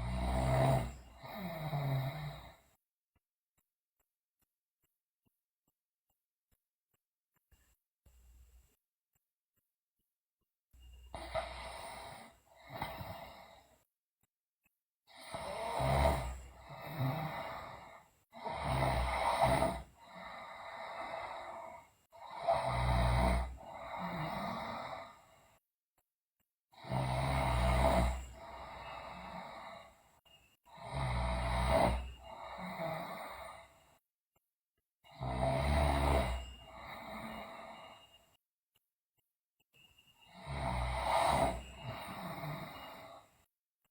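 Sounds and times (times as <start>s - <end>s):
girl snoring loudly: 0.0s - 2.6s, 11.1s - 13.7s, 15.1s - 25.2s, 26.8s - 30.0s, 30.7s - 33.7s, 35.1s - 38.1s, 40.3s - 43.3s.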